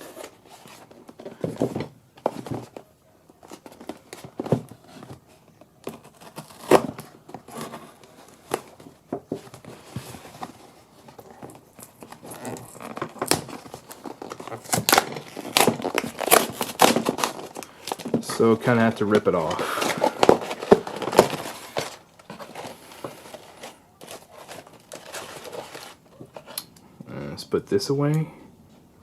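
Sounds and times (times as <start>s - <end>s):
packaging crinkling and tearing: 2.3s - 26.8s.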